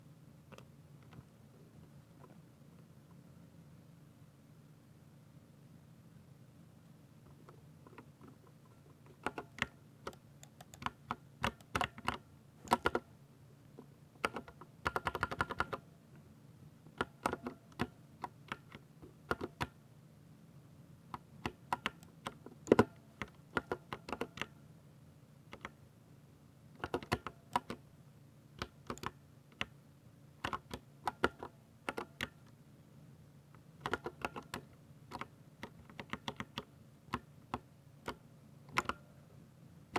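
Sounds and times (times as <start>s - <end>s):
mechanical keyboard typing: 9.2s - 13.0s, 14.2s - 15.8s, 17.0s - 19.8s, 21.4s - 24.6s, 25.5s - 25.8s, 26.8s - 27.8s, 28.6s - 29.8s, 30.4s - 32.4s, 33.8s - 39.0s.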